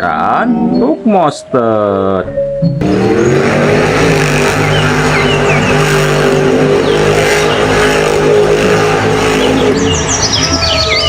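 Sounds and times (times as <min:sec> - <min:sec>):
monster truck engine running: 0:02.8 - 0:11.0.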